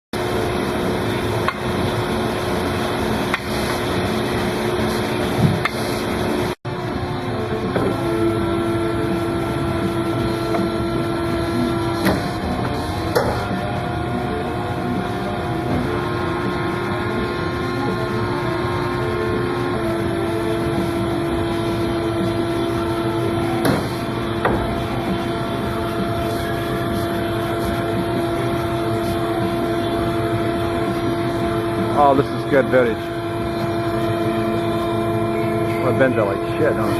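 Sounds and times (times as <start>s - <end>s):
hydraulic machine humming: 0.2s - 36.9s.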